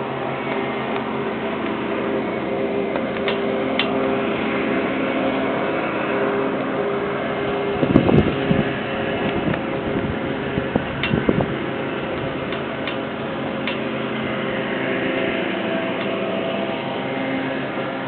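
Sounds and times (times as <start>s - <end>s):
machinery humming: 0.0s - 18.0s.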